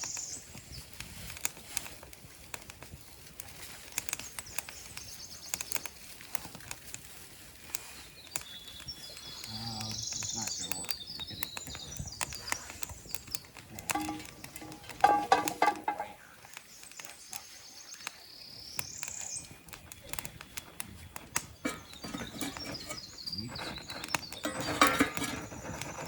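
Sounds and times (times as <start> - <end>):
clicks and light knocks: 0.1 - 26.0
songbird buzzy phrase: 9.4 - 10.9.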